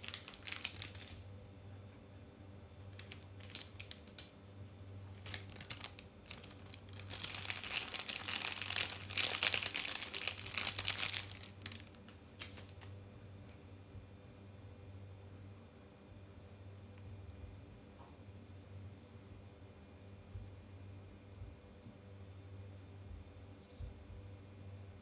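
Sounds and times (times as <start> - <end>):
dense crackling: 5.1 - 12.7.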